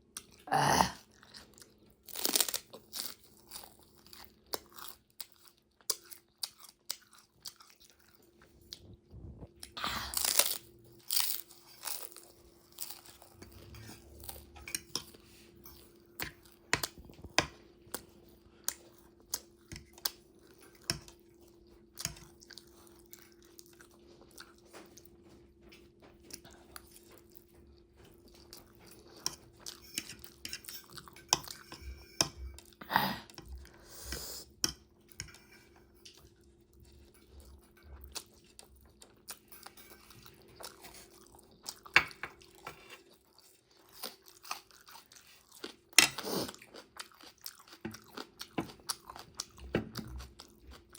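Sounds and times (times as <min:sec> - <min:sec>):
crunchy chewing and biting: 0:43.0 - 0:50.9.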